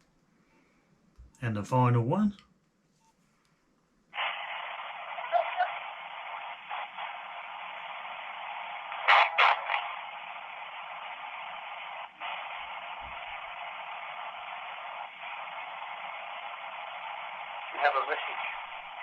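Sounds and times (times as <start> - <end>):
radio static hiss: 4.1 - 19.0
loud bursts of radio sound: 4.2 - 19.0.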